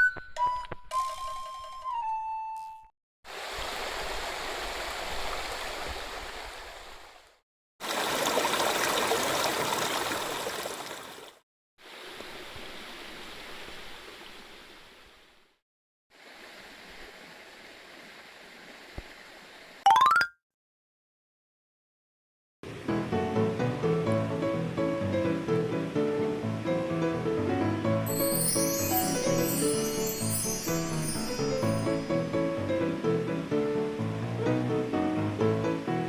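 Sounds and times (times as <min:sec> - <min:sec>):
stream water rushing: 0:03.3 - 0:15.1, 0:16.2 - 0:19.7.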